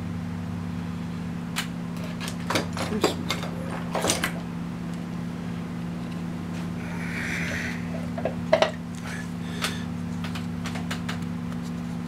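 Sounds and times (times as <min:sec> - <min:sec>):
low hum: 0:04.8 - 0:10.1.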